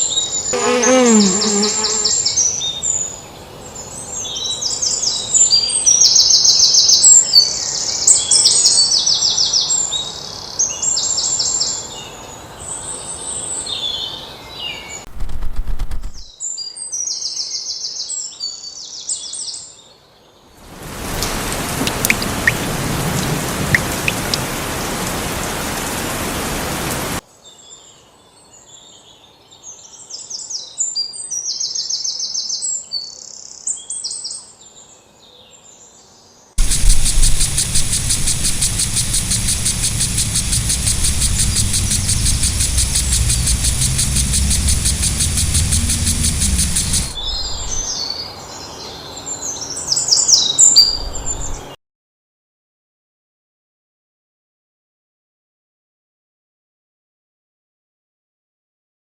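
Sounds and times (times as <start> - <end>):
loud rushing hiss: 20.6 - 27.2, 36.6 - 47.9
small birds trilling: 20.9 - 24.4, 36.6 - 51.7.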